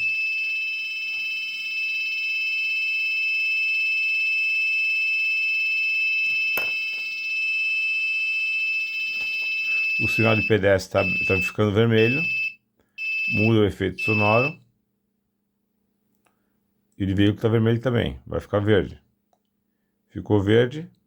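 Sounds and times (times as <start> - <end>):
high-pitched buzzer tone: 9.4 - 14.6.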